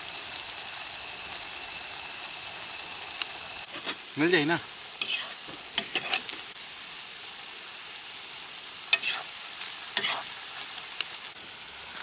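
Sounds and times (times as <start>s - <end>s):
onions sizzling in oil: 0.0s - 12.0s
spatula scraping pan: 3.6s - 4.1s, 5.0s - 6.4s, 8.9s - 9.3s, 10.0s - 10.3s.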